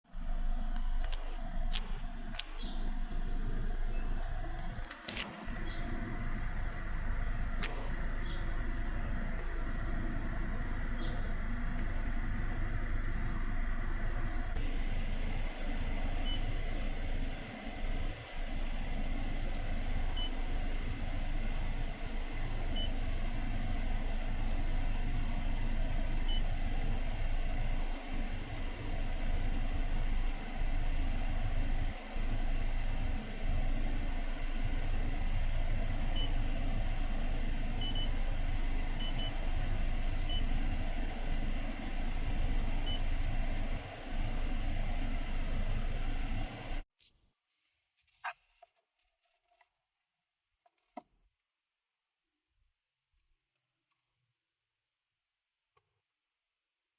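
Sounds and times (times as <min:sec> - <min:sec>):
car cabin rumble: 0:00.1 - 0:14.6.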